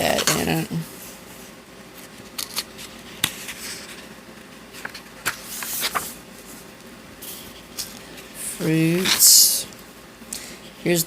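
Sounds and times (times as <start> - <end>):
paper pages turning: 2.0 - 4.1, 4.7 - 6.6.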